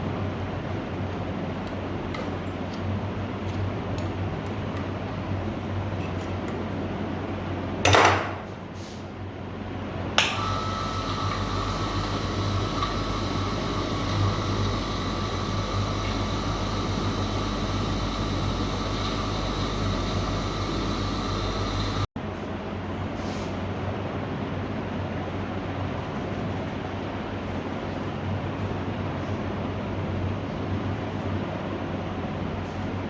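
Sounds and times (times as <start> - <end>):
small electric motor whining: 10.2 - 22.1.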